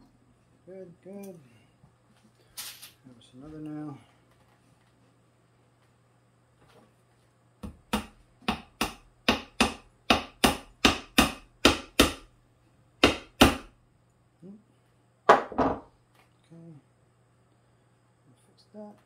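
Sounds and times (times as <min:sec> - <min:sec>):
hammer striking nail into wood: 0:07.6 - 0:12.3, 0:13.0 - 0:13.7.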